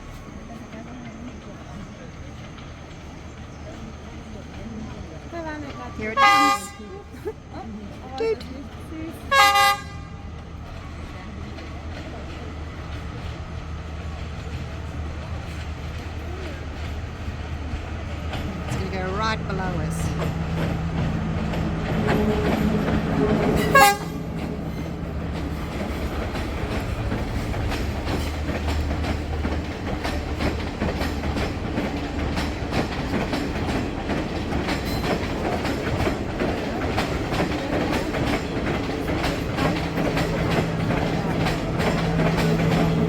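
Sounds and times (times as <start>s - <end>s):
train engine droning: 0.0s - 43.0s
train horn blast: 6.0s - 7.1s, 9.3s - 10.4s, 19.6s - 25.2s
train wheels clicking over rail joints: 7.8s - 43.0s.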